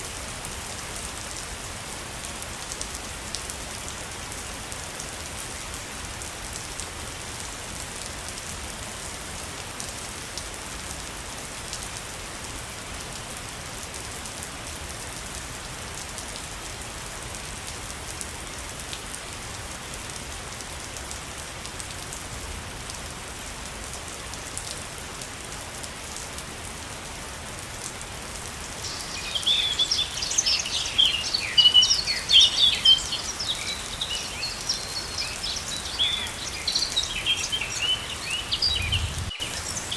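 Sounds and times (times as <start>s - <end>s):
waterfall rushing water: 28.1s - 39.9s
birds chirping: 28.8s - 39.9s.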